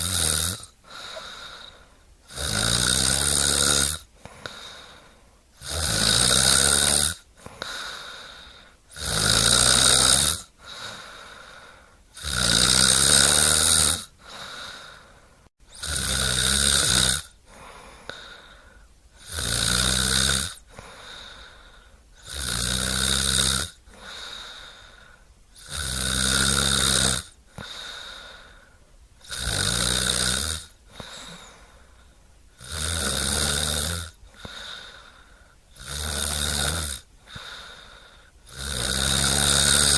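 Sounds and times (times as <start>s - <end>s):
loud rattling snores: 0.0s - 4.9s, 5.6s - 15.0s, 15.7s - 18.4s, 19.2s - 21.4s, 22.2s - 24.8s, 25.6s - 28.2s, 29.2s - 31.7s, 32.6s - 35.1s, 35.7s - 39.9s
quiet breathing: 0.6s - 2.4s, 4.0s - 5.6s, 7.2s - 8.9s, 10.4s - 12.2s, 14.0s - 15.8s, 17.3s - 19.3s, 20.6s - 22.3s, 23.7s - 25.7s, 27.3s - 29.4s, 30.6s - 32.7s, 33.6s - 36.4s, 37.0s - 39.9s.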